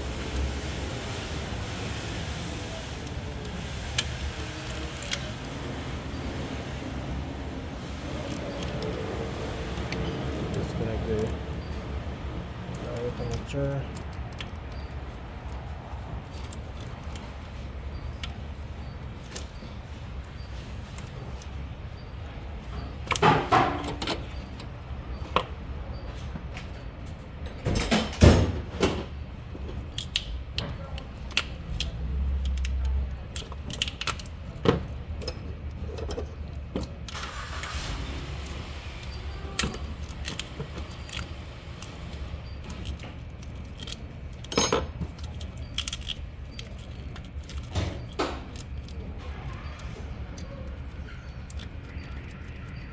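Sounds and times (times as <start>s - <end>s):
metal hand tools clinking: 43.6s - 46.1s.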